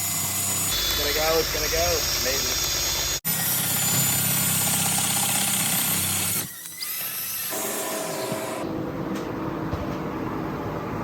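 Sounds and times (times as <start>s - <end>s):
power tool running: 0.0s - 8.6s.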